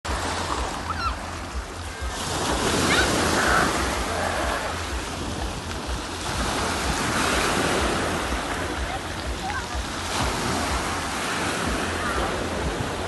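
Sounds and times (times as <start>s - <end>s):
sea surf washing in: 0.1s - 13.0s
wind buffeting microphone: 0.1s - 13.0s.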